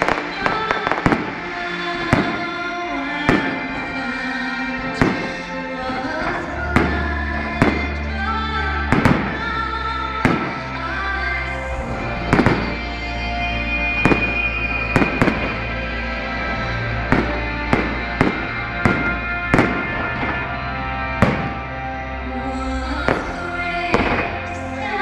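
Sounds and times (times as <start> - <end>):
fireworks bursting in sharp bangs: 0.0 - 4.1, 4.8 - 8.0, 8.9 - 9.6, 10.2 - 10.8, 12.2 - 13.0, 14.0 - 15.8, 17.1 - 20.6, 21.2 - 21.8, 23.1 - 24.5
music: 0.0 - 25.0.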